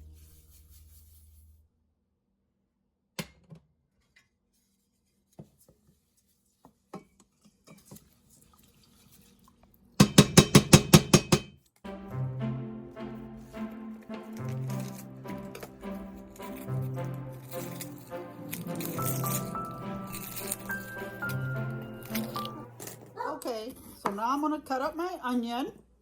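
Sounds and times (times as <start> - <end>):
utensil striking dishes: 10.0 - 11.5
background music: 11.9 - 24.0.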